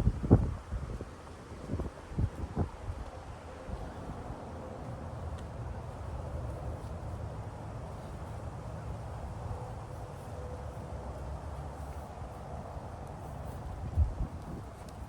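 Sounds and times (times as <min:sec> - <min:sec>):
wind buffeting microphone: 0:00.0 - 0:07.5, 0:12.1 - 0:15.0.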